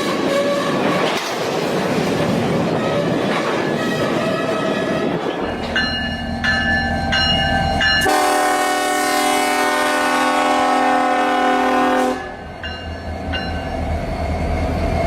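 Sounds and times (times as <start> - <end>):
locomotive bell dinging: 5.4 - 8.6, 12.2 - 14.0
train air horn blast: 8.0 - 12.4.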